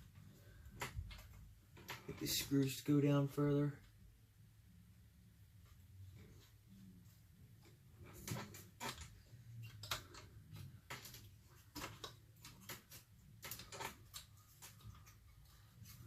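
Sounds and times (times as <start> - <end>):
small metal parts clicking: 8.0 - 16.0.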